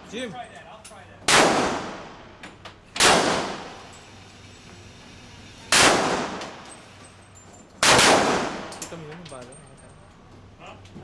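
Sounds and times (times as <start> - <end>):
gunshots: 1.3 - 2.2, 3.0 - 3.8, 5.7 - 6.6, 7.8 - 8.7.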